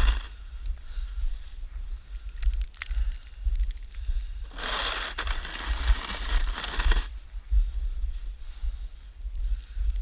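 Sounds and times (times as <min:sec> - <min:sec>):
snow shovel scraping snow: 0:00.0 - 0:00.3, 0:04.5 - 0:07.1
wind buffeting microphone: 0:00.0 - 0:10.0.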